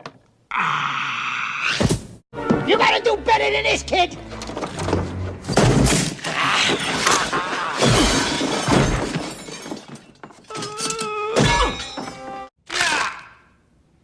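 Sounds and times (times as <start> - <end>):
objects crashing and shattering: 4.4 - 12.3
person yelling: 12.7 - 13.5.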